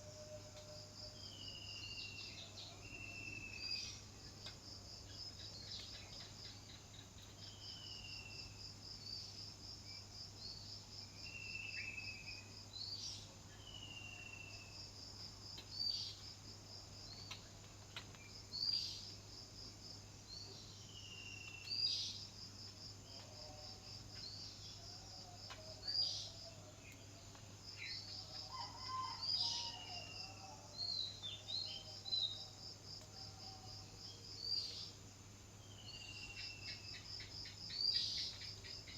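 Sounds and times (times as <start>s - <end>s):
insect trill: 0.0s - 38.9s.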